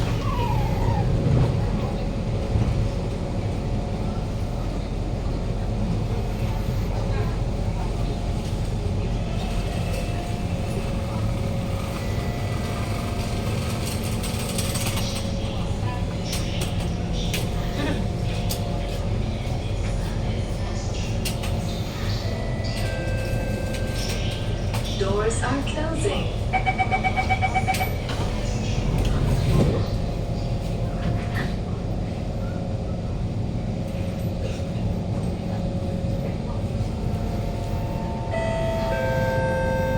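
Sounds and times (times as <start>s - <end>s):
train ventilation hum: 0.0s - 39.9s
faint steady tones: 37.0s - 39.9s.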